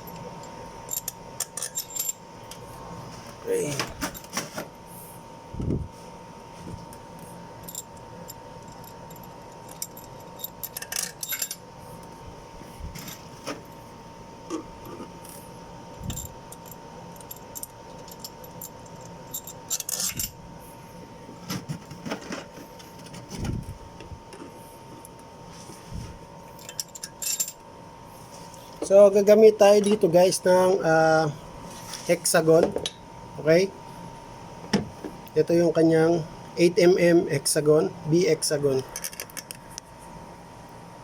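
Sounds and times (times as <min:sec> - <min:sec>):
metallic clinks of bolts and washers: 0:00.0 - 0:02.6, 0:07.6 - 0:11.6, 0:14.5 - 0:20.4, 0:26.6 - 0:27.6, 0:38.9 - 0:39.6
faint steady whine: 0:00.0 - 0:41.0.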